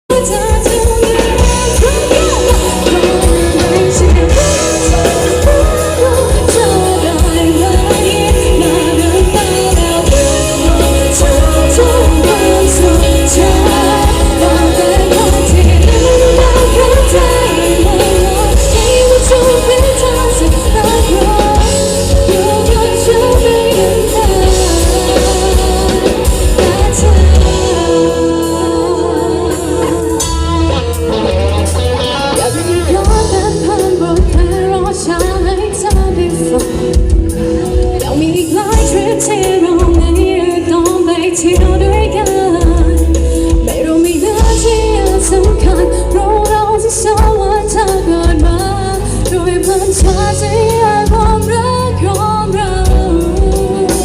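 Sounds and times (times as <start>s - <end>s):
band with heavy bass and drums: 0.0s - 54.0s
woman singing pop song: 0.1s - 31.2s, 32.4s - 54.0s.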